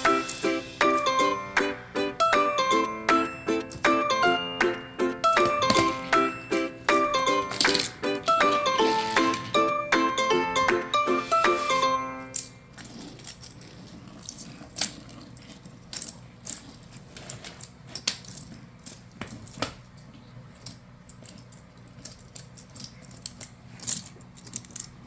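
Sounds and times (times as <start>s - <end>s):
short musical phrase: 0.0s - 12.3s
toy building pieces clicking: 20.6s - 25.0s.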